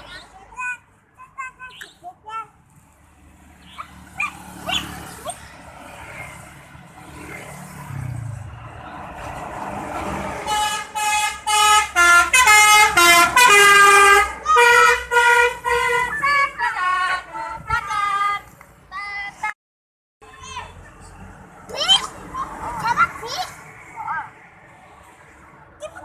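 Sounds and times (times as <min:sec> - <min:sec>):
bus approaching: 0:00.0 - 0:19.6, 0:20.2 - 0:26.0
bus musical horn playing a tune: 0:10.4 - 0:18.5.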